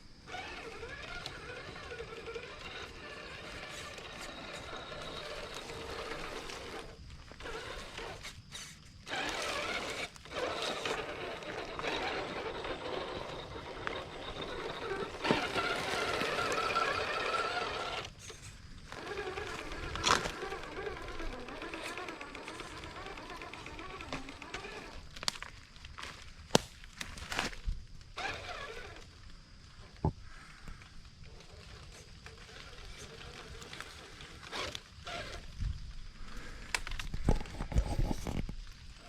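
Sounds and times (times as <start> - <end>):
electric motor and gears whining: 0.0 - 39.0
truck knocking on rock: 13.8 - 17.5.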